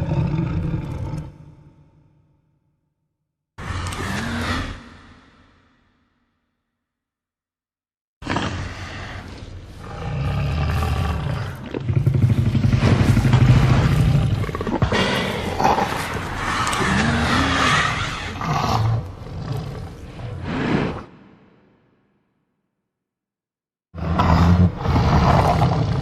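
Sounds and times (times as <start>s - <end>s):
deep rumbling dinosaur roar: 0.0s - 2.1s, 3.6s - 5.5s, 8.2s - 21.2s, 24.0s - 26.0s.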